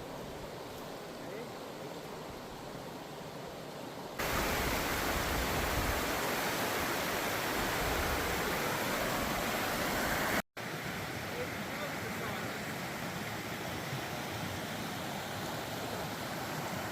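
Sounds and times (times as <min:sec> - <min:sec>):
waterfall roaring: 0:04.2 - 0:16.9.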